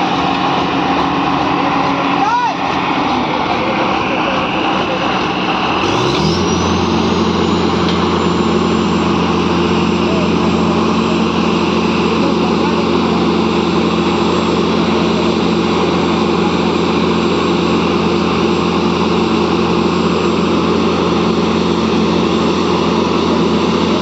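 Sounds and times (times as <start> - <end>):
small motor droning: 5.8 - 22.7.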